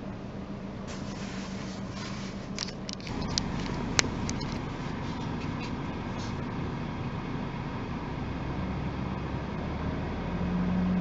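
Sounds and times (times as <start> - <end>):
car engine rumble: 0.0 - 11.0
short clicks and scrapes: 0.9 - 6.4.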